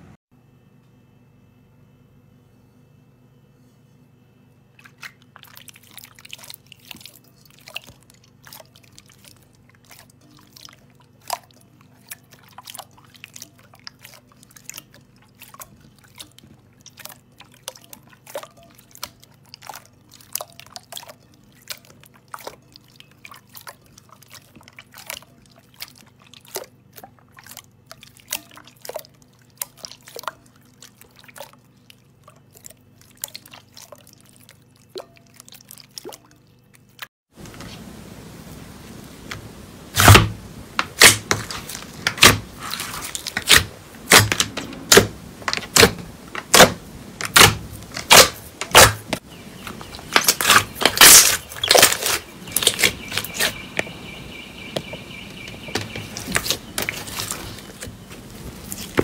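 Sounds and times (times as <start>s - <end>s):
faint low hum: 0.0s - 48.0s
slime squishing with wet clicks: 4.8s - 37.1s, 49.7s - 53.9s, 54.6s - 57.9s.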